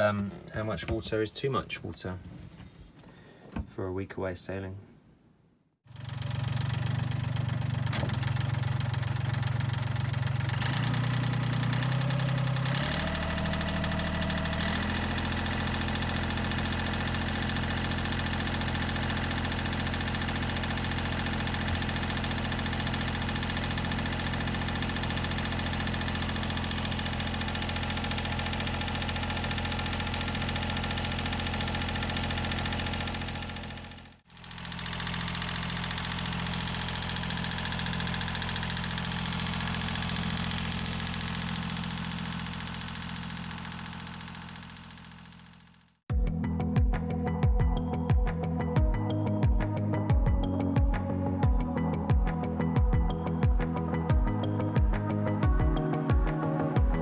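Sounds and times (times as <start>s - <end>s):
boat engine running: 5.9s - 46.0s.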